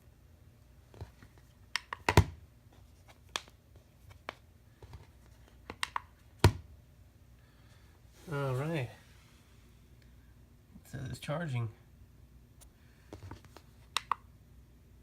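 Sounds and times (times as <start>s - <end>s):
small clicks handling smartwatch: 13.5s - 14.2s.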